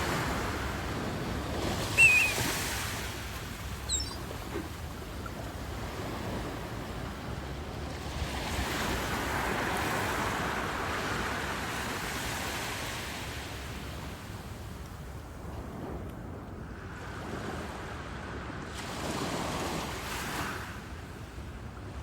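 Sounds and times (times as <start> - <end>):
wave breaking on beach: 0.0 - 5.0
wind rumble on microphone: 0.0 - 22.0.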